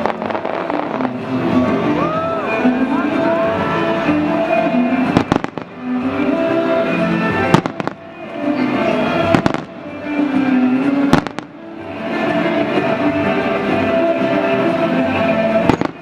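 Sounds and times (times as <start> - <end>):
fireworks bursting with bangs: 0.0 - 1.9, 4.2 - 6.3, 7.3 - 11.6, 15.4 - 16.0
loud show music: 0.0 - 16.0.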